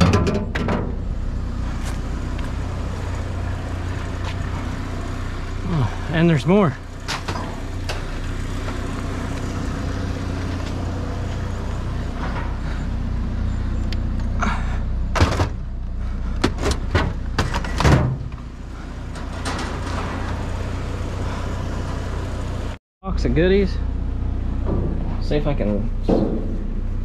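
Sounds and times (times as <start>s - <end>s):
sharp knocks and clatters: 0.0s - 1.0s, 15.1s - 15.6s, 24.6s - 25.4s, 26.0s - 26.9s
vehicle engine idling: 0.1s - 27.0s.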